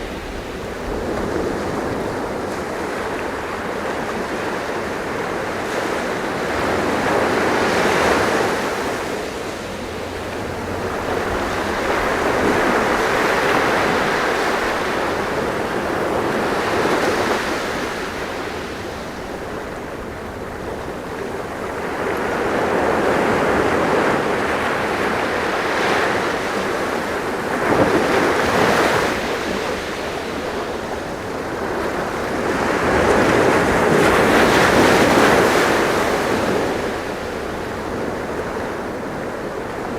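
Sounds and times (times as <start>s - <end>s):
sea waves breaking on shore: 0.0s - 39.9s
wind: 0.0s - 39.9s.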